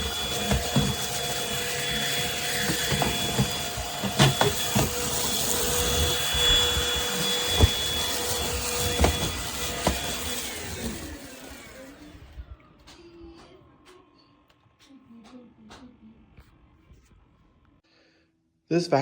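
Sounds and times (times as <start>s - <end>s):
vacuum motor whine: 0.0s - 14.8s.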